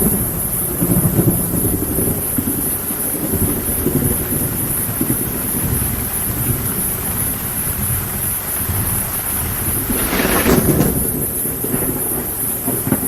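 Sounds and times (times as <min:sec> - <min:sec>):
thunder rumbling: 0:08.6 - 0:13.0.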